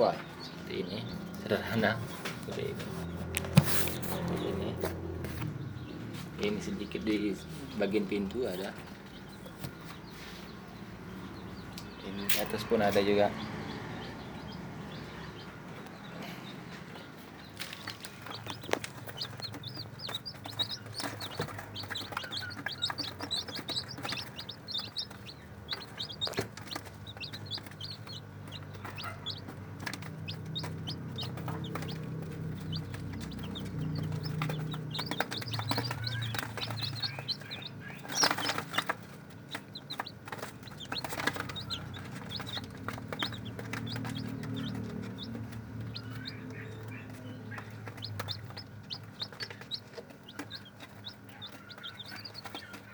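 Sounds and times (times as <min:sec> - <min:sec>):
chicks peeping: 0:00.0 - 0:52.9.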